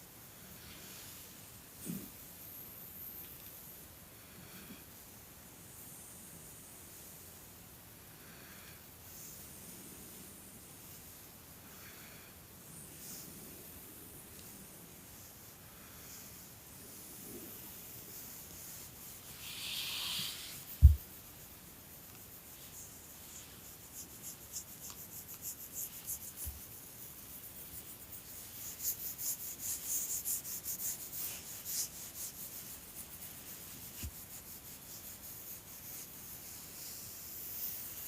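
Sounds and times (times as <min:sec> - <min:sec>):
scratchy rubbing: 0:16.1 - 0:38.0
sharp low thump: 0:20.8 - 0:21.0.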